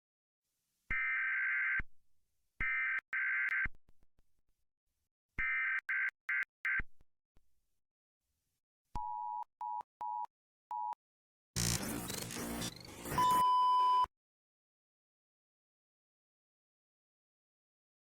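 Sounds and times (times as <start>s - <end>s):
digital data tone bursts: 11.6s - 14.1s.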